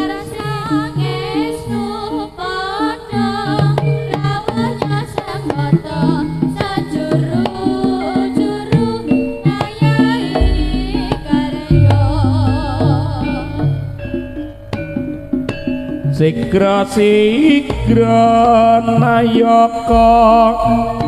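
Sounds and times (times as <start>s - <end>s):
hand drum strokes: 3.5s - 18.1s
pitched metal percussion melody: 3.6s - 21.0s
deep gong tone: 10.4s - 15.2s.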